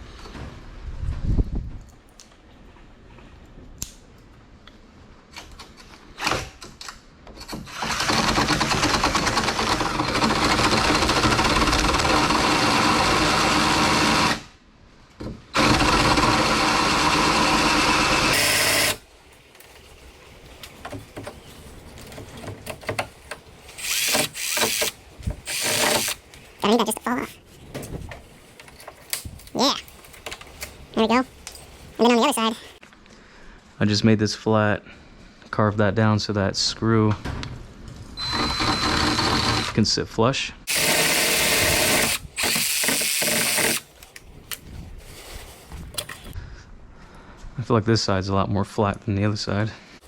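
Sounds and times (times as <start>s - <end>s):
power drill drilling: 7.8s - 14.5s, 15.6s - 19.0s, 23.8s - 26.2s, 38.2s - 39.8s, 40.7s - 43.8s.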